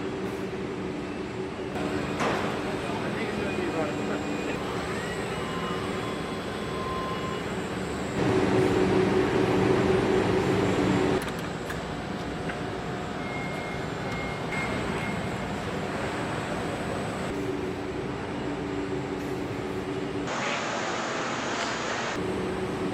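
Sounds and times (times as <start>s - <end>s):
machinery hum and hiss: 0.0s - 22.9s.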